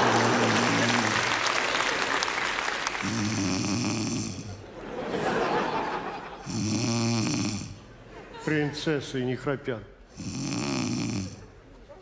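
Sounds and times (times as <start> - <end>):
woman snoring: 3.0 - 4.6, 6.4 - 7.8, 10.2 - 11.4.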